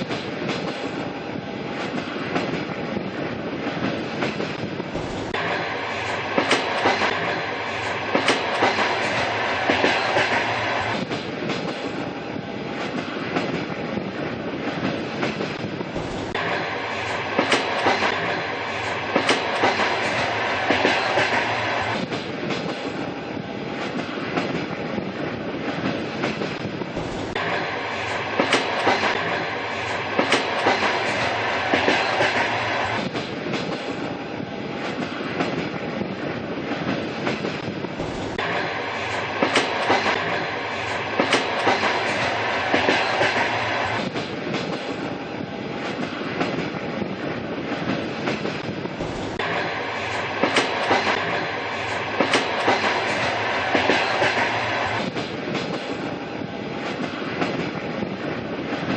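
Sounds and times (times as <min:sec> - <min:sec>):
train rumbling along track: 0:00.0 - 0:58.9
wheels clacking over rail joints: 0:03.8 - 0:12.1, 0:14.6 - 0:23.1, 0:25.8 - 0:34.1, 0:36.8 - 0:45.1, 0:47.8 - 0:56.1.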